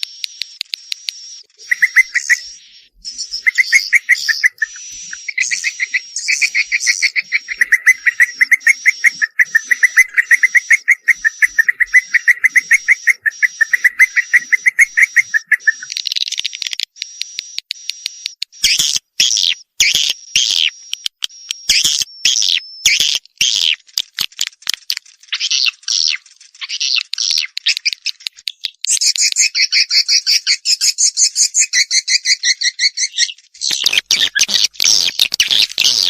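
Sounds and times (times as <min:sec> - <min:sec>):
swiftlet ticking chirps: 0:00.0 - 0:23.8, 0:31.9 - 0:36.0.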